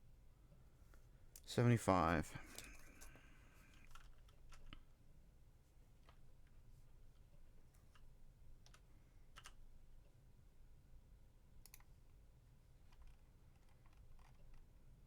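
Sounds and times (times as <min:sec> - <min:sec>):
mouse and keyboard clicks: 0:11.6 - 0:11.9, 0:12.9 - 0:14.7.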